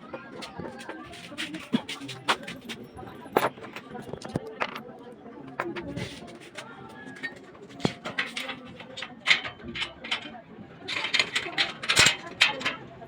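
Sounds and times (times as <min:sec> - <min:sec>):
clicks and knocks from hand work: 0:07.2 - 0:13.0.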